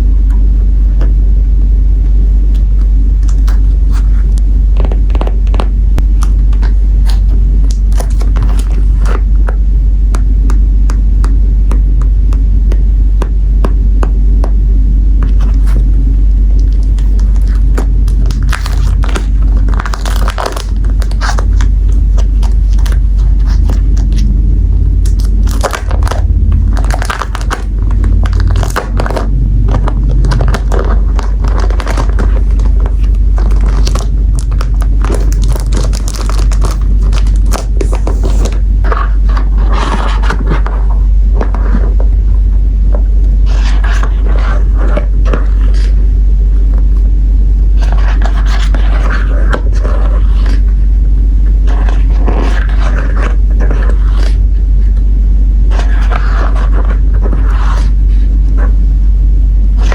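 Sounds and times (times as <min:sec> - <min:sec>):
low rumble: 0:00.0 - 0:59.9
paper and plastic crinkling: 0:16.6 - 0:24.2, 0:25.1 - 0:39.0.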